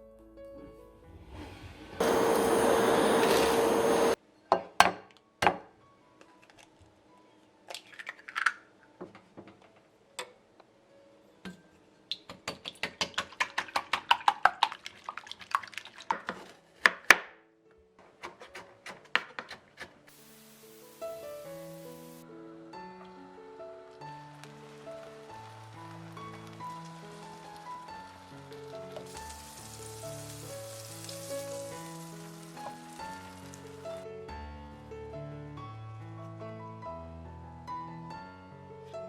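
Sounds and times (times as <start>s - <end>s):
power tool running: 2.0s - 4.2s
fast tapping on wood: 12.3s - 14.7s.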